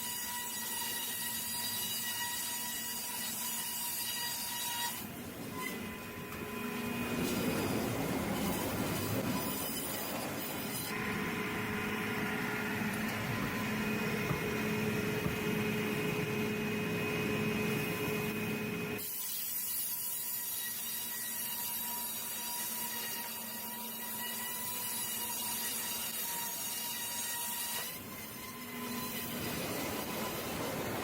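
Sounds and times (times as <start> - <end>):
sawmill machinery whining: 5.0 - 19.0, 28.0 - 31.0.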